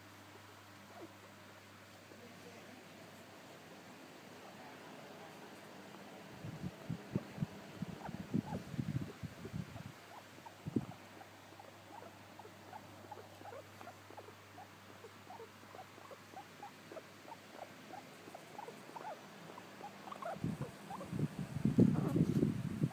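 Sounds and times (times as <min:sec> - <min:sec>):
guinea pig squeaking: 0:00.9 - 0:01.1, 0:07.1 - 0:22.2.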